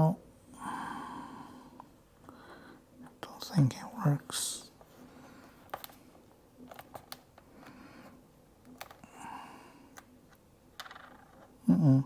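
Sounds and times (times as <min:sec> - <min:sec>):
soft rustling: 0:03.5 - 0:09.0
small laptop parts clicking: 0:06.6 - 0:07.8, 0:08.6 - 0:09.1.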